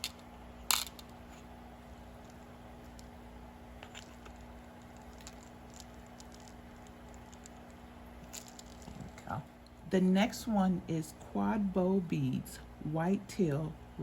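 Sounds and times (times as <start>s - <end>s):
steady low hum: 0.0s - 14.0s
beads clicking and tapping: 3.8s - 9.2s.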